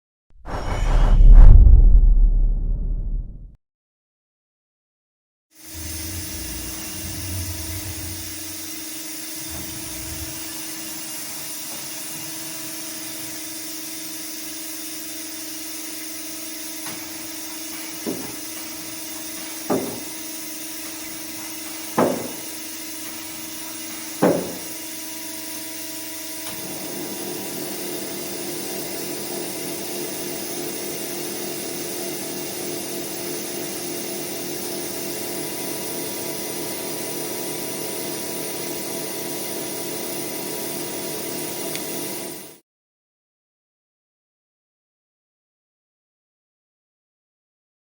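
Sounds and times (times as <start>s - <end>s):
lathe running hum: 5.7s - 42.6s
sharp machine clunks: 22.0s - 22.5s.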